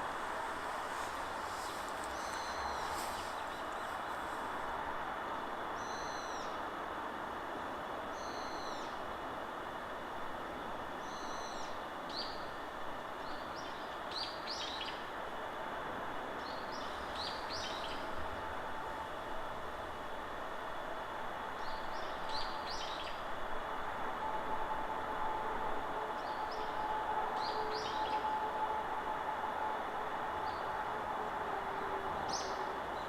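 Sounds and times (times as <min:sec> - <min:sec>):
forest wind: 0:00.0 - 0:33.0.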